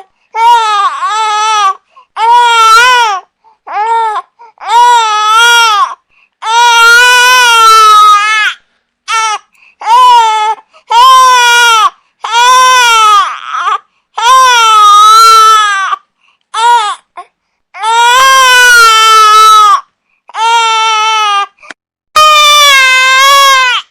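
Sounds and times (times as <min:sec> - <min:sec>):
infant crying: 0:00.0 - 0:21.6, 0:22.2 - 0:23.9.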